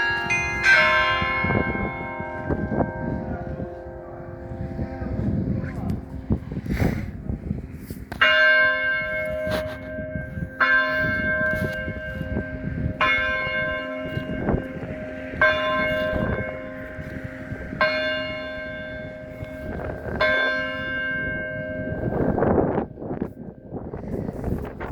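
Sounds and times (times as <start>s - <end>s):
tower bell striking: 0.0s - 6.6s, 7.5s - 24.1s
wind noise: 0.0s - 24.9s.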